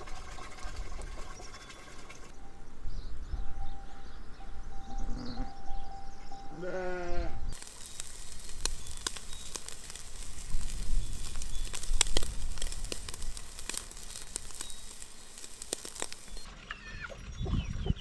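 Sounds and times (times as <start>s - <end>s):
steady hiss: 7.5s - 16.5s
wood fire crackling and popping: 7.5s - 16.5s.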